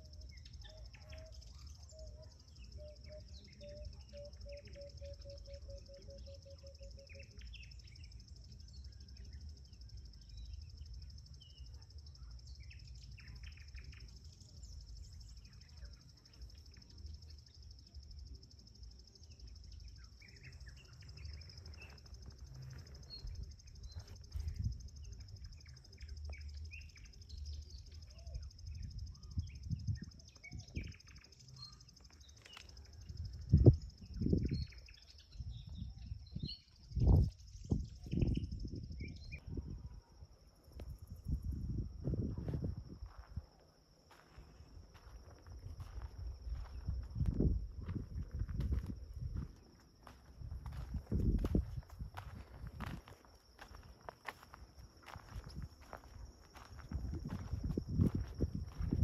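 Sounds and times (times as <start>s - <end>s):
small birds chirping: 0.0s - 39.6s, 40.3s - 59.0s
high insect drone: 40.5s - 59.0s.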